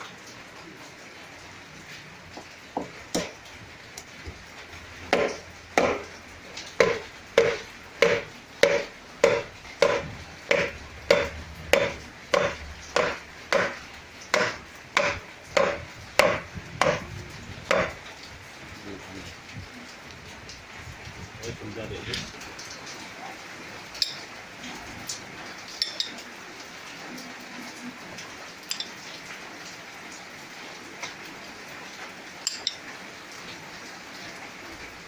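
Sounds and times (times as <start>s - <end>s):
knife chopping on wooden board: 2.8s - 3.4s, 5.1s - 6.1s, 6.8s - 17.0s, 17.7s - 18.0s.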